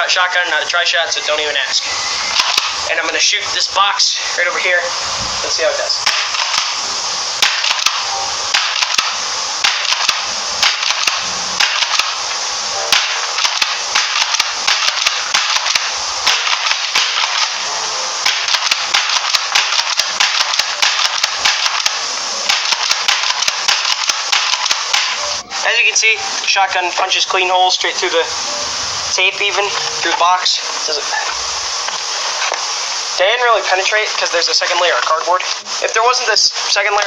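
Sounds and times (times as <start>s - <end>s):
steady hiss: 0.0s - 37.0s
airsoft shotgun clicks and snaps: 2.4s - 2.7s, 7.4s - 8.0s, 8.6s - 12.2s, 12.9s - 17.6s, 18.3s - 25.2s.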